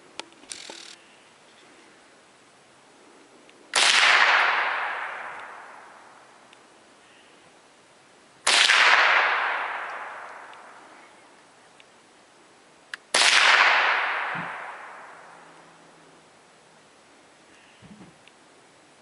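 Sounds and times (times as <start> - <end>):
rifle shots: 3.7 - 5.9, 8.4 - 10.7, 13.1 - 15.4.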